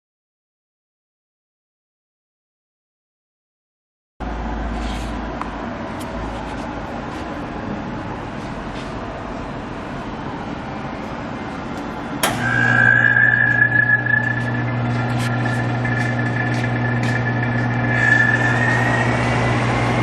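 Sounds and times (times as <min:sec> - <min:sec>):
machine humming and whining: 0:04.2 - 0:20.0
steady background noise: 0:04.2 - 0:20.0
machine switch click: 0:12.2 - 0:12.7.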